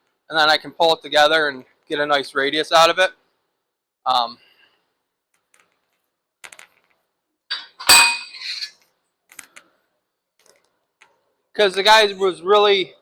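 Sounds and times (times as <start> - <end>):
loud ringing metal clang: 7.5 - 8.5.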